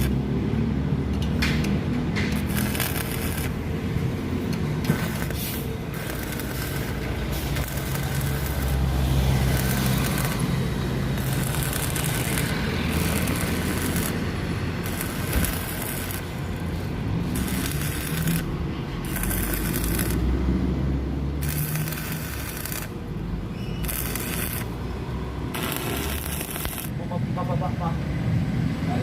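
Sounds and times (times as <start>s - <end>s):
welding arc crackling and hissing: 0.0s - 0.2s, 2.4s - 20.3s, 21.4s - 23.0s, 23.8s - 24.8s, 25.5s - 27.0s
welding machine humming: 0.0s - 0.2s, 2.4s - 20.3s, 21.4s - 23.0s, 23.8s - 24.9s, 25.5s - 27.0s.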